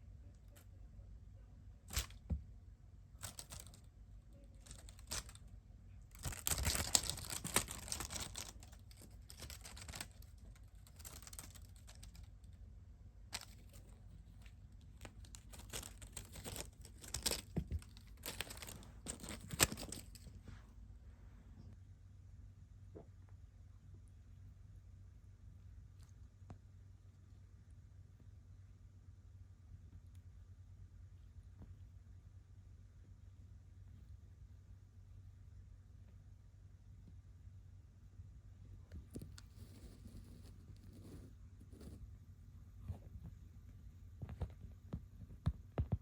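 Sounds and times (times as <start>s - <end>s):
rustling and crinkling: 1.8s - 21.8s, 38.8s - 46.0s.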